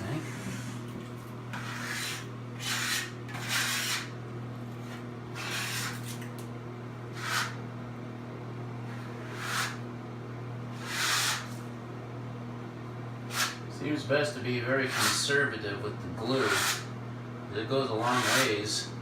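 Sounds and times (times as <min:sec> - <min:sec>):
steady low hum: 0:00.0 - 0:19.0
spreader scraping adhesive: 0:09.3 - 0:09.8, 0:10.8 - 0:11.5, 0:14.9 - 0:15.2, 0:18.0 - 0:18.6.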